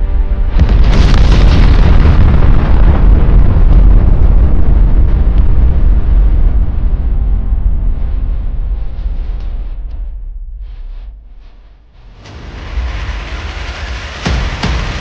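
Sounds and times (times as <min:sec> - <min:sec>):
deep rumble: 0:00.0 - 0:15.0
explosion blast: 0:00.5 - 0:08.0, 0:12.1 - 0:15.0
explosion hiss: 0:12.1 - 0:15.0.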